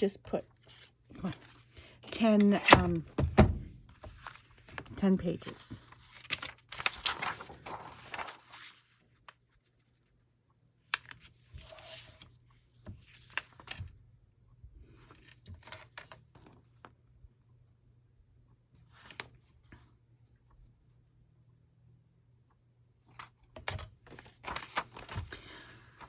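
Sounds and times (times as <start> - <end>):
paper sheets rustling: 0.6 - 9.0, 24.1 - 26.0.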